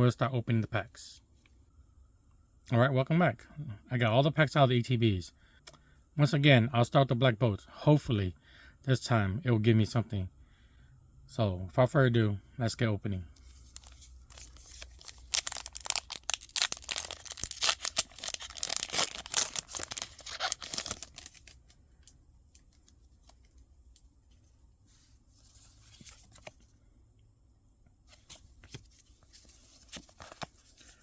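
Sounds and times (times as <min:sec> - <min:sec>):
foil wrapper tearing and crinkling: 0:13.7 - 0:21.6.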